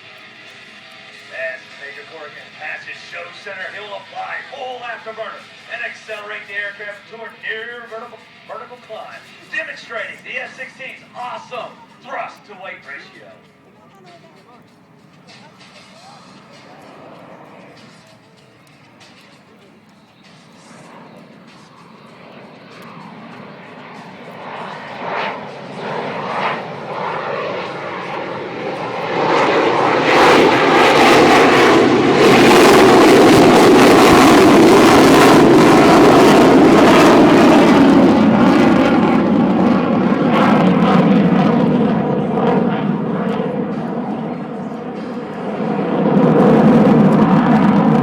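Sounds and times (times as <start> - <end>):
jet fighter passing: 0.0 - 48.0.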